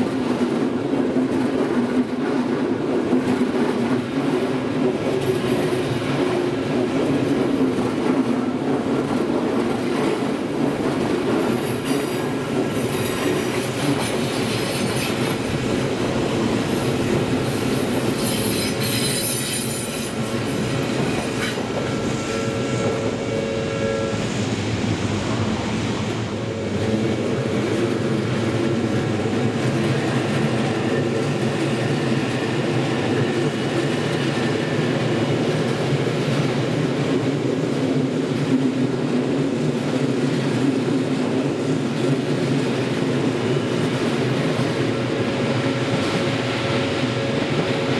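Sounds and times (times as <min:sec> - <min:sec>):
train wheels clacking over rail joints: 0:00.2 - 0:23.5
high-pitched wheel squeal: 0:17.7 - 0:24.2.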